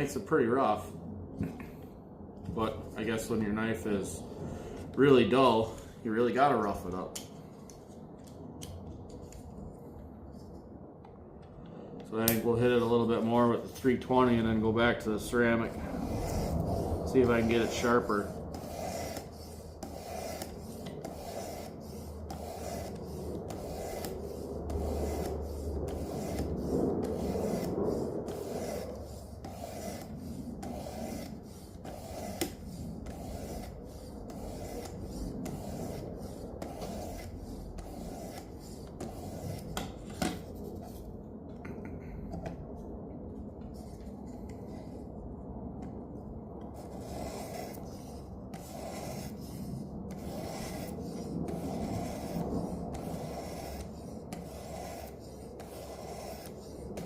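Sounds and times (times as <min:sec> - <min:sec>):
knife rasping on sharpener: 0:15.8 - 0:40.4, 0:47.0 - 0:47.9, 0:48.5 - 0:49.5, 0:50.1 - 0:57.0.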